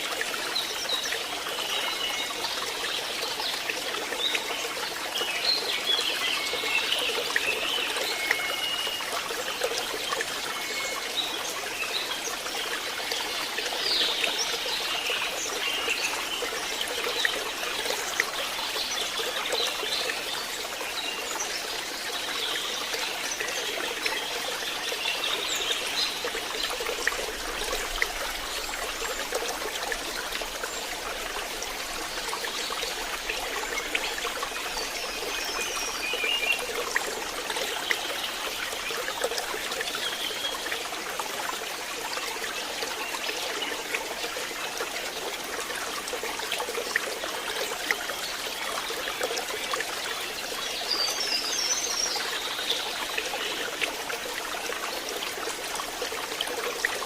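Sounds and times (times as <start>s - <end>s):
stream water trickling: 0.0s - 57.0s.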